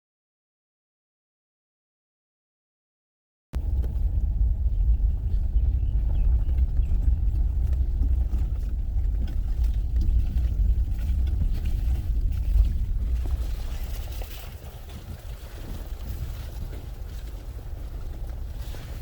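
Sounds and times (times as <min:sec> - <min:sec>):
car rumbling on rough road: 0:03.6 - 0:19.0.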